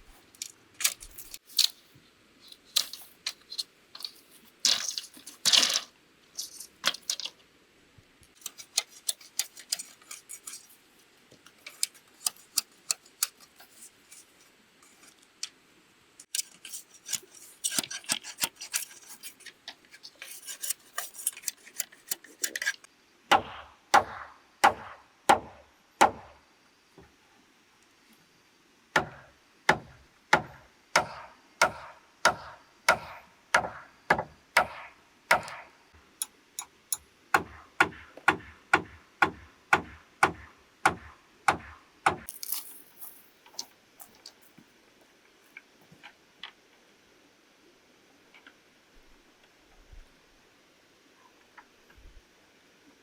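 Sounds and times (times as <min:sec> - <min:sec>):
hand tool striking bamboo: 0:23.3 - 0:26.3, 0:29.0 - 0:35.7, 0:37.4 - 0:42.4.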